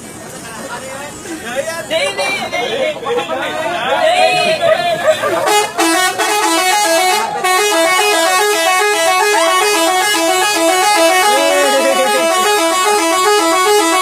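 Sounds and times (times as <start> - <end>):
musical air horn playing tune: 5.4 - 14.0.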